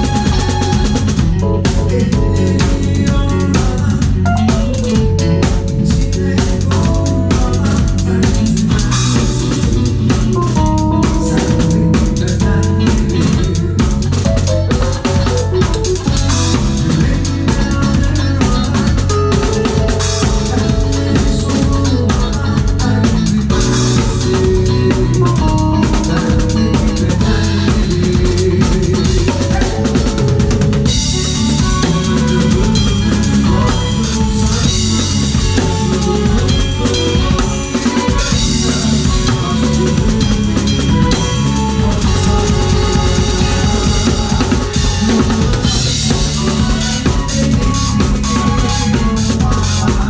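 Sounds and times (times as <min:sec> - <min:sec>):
drum kit beat: 0:00.0 - 0:50.0
rock band playing live: 0:00.0 - 0:50.0
cymbals: 0:23.2 - 0:49.9.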